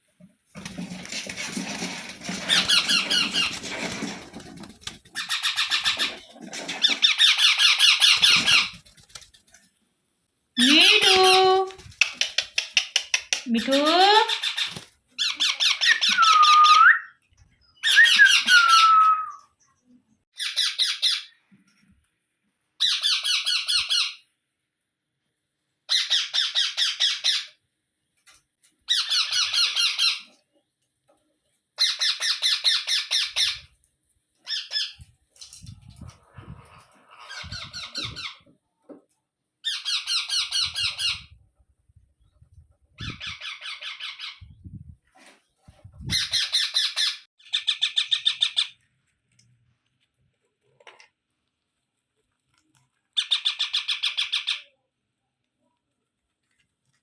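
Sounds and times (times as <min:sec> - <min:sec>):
parakeets squawking: 0:05.2 - 0:08.7, 0:17.8 - 0:19.3
gliding whistle: 0:16.1 - 0:17.1, 0:17.9 - 0:19.4.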